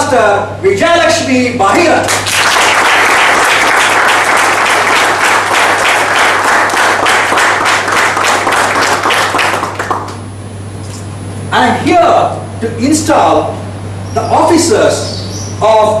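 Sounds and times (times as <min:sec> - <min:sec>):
audience applauding: 0:02.0 - 0:10.2.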